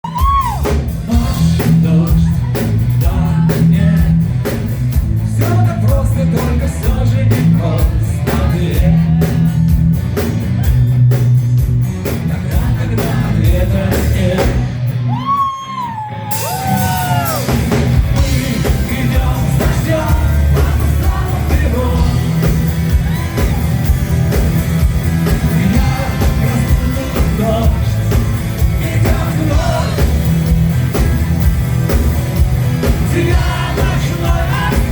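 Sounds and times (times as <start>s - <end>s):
person singing: 0.0s - 4.4s, 5.2s - 9.8s, 12.2s - 15.6s, 18.1s - 23.7s, 25.1s - 30.6s, 32.8s - 34.9s
live rock band: 0.0s - 34.9s.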